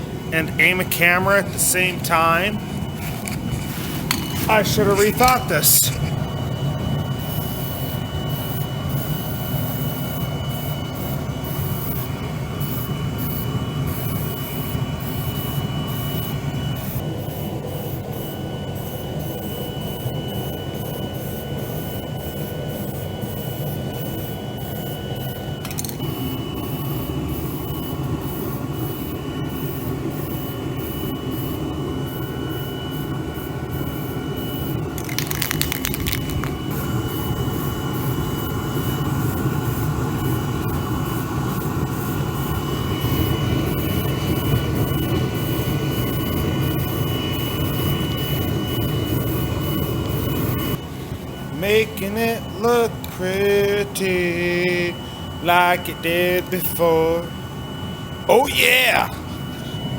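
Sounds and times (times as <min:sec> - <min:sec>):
low hum: 0:00.0 - 0:07.3
oil burner stove roaring hiss: 0:00.0 - 0:59.9
thin high whine: 0:00.0 - 0:59.9.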